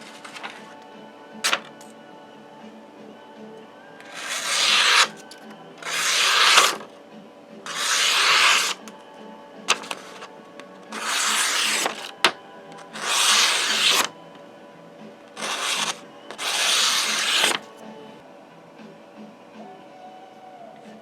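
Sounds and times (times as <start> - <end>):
knife blade hissing on abrasive: 4.1 - 6.8, 7.7 - 8.8, 10.9 - 12.0, 15.4 - 17.6.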